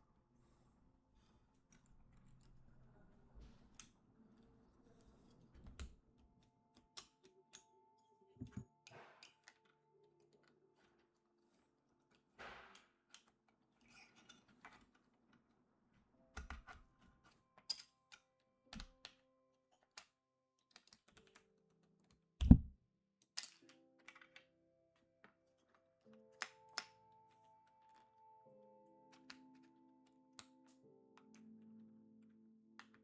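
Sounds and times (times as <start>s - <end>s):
soft background music: 0.0s - 33.0s
plastic keycaps clicking and tapping: 16.4s - 16.8s, 18.8s - 19.2s, 22.4s - 24.4s
thump: 22.4s - 22.7s.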